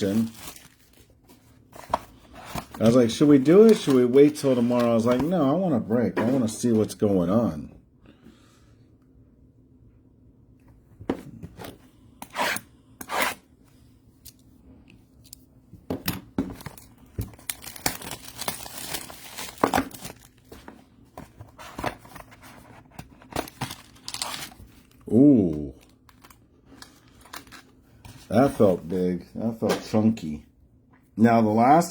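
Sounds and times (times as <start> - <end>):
packaging tearing: 0.0 - 1.1, 17.3 - 20.5, 23.2 - 25.0
packaging crinkling: 0.0 - 5.3, 16.6 - 20.6, 22.0 - 25.1.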